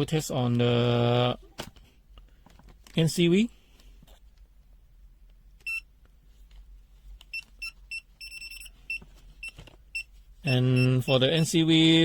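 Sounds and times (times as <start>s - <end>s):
multimeter buzzer beeps: 7.3s - 11.6s.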